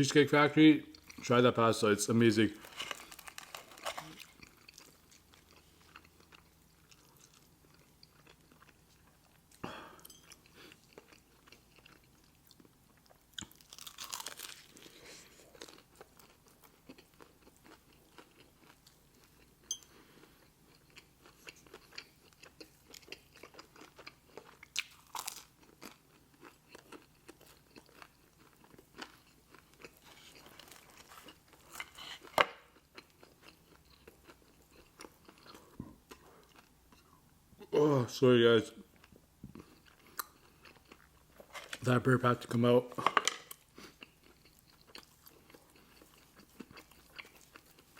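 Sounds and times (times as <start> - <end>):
chewing and crunching food: 0.8 - 1.4, 2.4 - 37.3, 38.8 - 42.7, 43.4 - 47.9.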